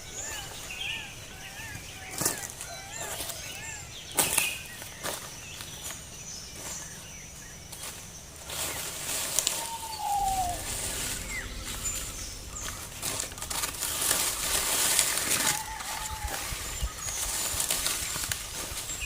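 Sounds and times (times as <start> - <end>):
bird whistled call: 9.2 - 18.2
faint high chirps: 9.4 - 18.3.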